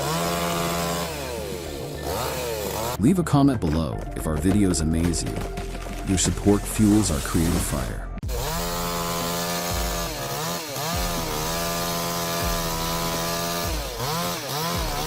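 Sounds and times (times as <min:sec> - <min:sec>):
chainsaw cutting at high revs: 0:00.0 - 0:03.0, 0:08.2 - 0:15.0.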